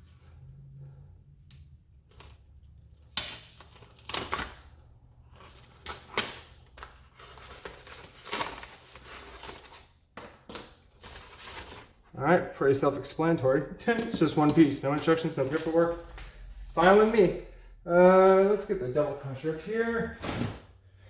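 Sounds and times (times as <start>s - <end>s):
sharp cracks and knocks: 3.0s - 4.6s
packaging tearing and crinkling: 3.0s - 12.0s.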